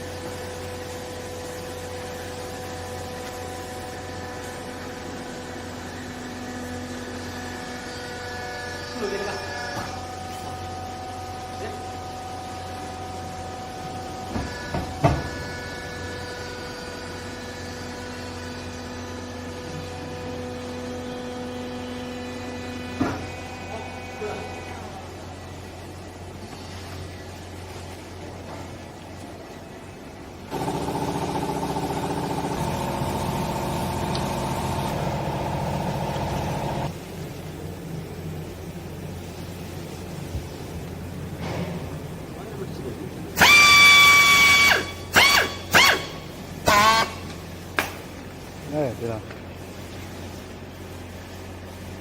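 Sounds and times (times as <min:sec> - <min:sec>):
hydraulic motor humming and whining: 0:00.0 - 0:26.5, 0:30.2 - 0:37.0, 0:43.3 - 0:47.4.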